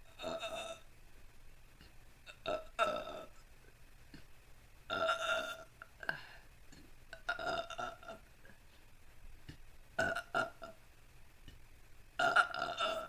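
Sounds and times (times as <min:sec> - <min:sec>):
woman burping: 0:00.2 - 0:00.8, 0:02.3 - 0:03.3, 0:04.9 - 0:06.2, 0:07.1 - 0:08.2, 0:10.0 - 0:10.8, 0:12.2 - 0:13.0.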